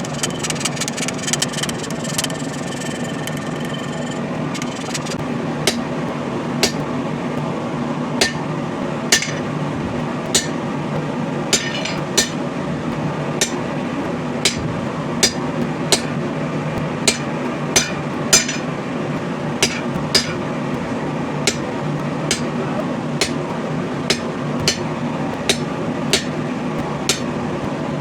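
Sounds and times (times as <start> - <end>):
shop fan humming: 1.7 - 28.0
hammer tapping on steel: 5.2 - 7.5, 8.2 - 27.7.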